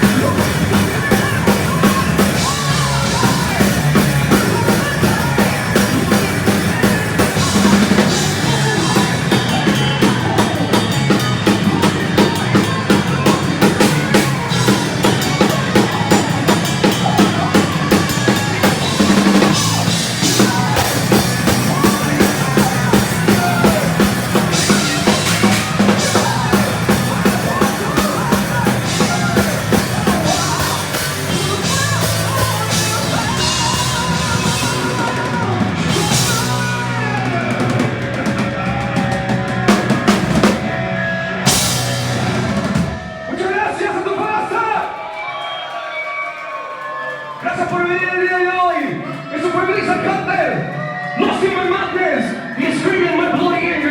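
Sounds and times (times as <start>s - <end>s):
bass drum: 0.0s - 40.8s
fast drum kit hits: 0.0s - 44.6s
heavy metal band playing live: 0.0s - 44.7s.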